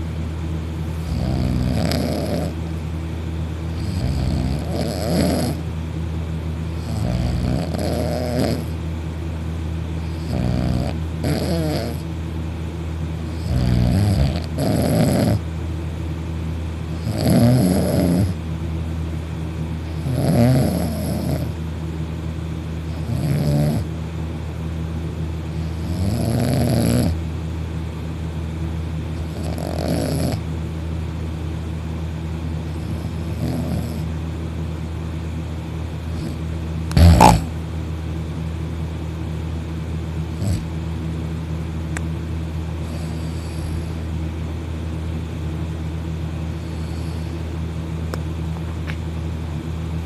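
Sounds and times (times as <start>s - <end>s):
steady low hum: 0.0s - 50.0s
loud snoring: 1.0s - 2.6s, 3.7s - 5.6s, 6.8s - 8.8s, 10.0s - 12.0s, 13.3s - 15.4s, 17.0s - 18.4s, 19.9s - 21.6s, 22.9s - 23.9s, 25.6s - 27.2s, 29.2s - 30.4s, 32.7s - 34.1s, 36.1s - 37.6s, 40.4s - 40.7s, 42.8s - 44.0s, 46.6s - 47.4s.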